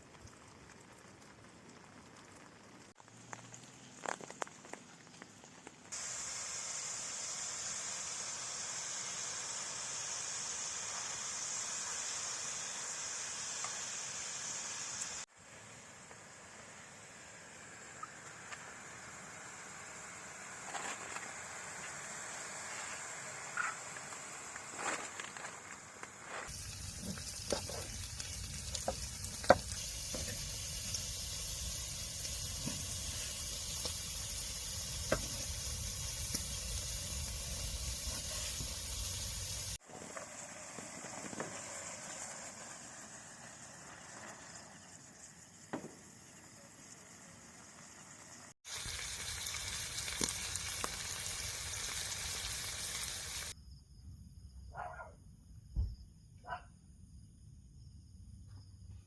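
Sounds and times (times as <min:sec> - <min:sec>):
steady hiss: 0:03.7 - 0:24.8, 0:26.5 - 0:53.6
sharp pops and clicks: 0:36.2 - 0:36.6.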